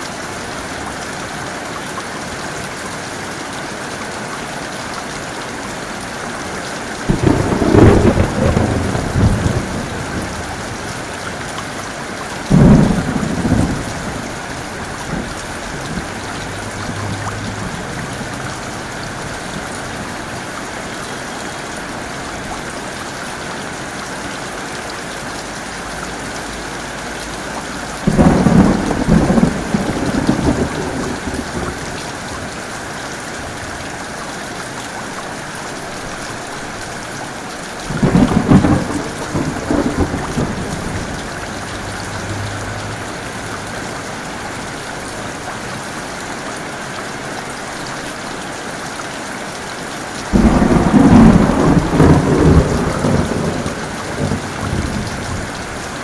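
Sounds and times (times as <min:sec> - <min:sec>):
heavy rain pouring: 0:00.0 - 0:56.0
thunder claps rumbling: 0:07.0 - 0:20.5, 0:28.0 - 0:32.5, 0:37.9 - 0:45.8, 0:50.3 - 0:55.9.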